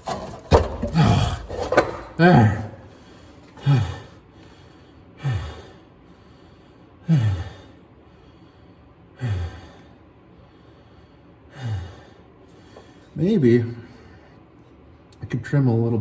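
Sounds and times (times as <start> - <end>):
man sighing heavily: 0.8 - 1.6, 2.2 - 4.2.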